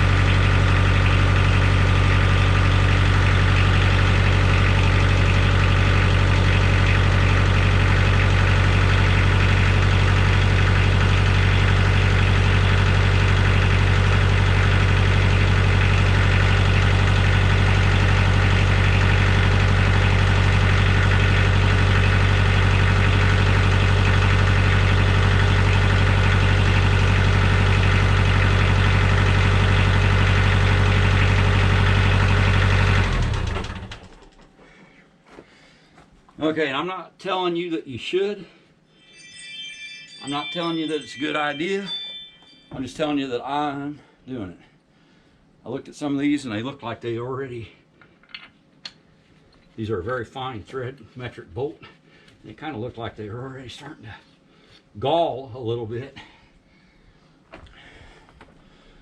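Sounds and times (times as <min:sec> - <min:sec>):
engine idling: 0:00.0 - 0:35.0.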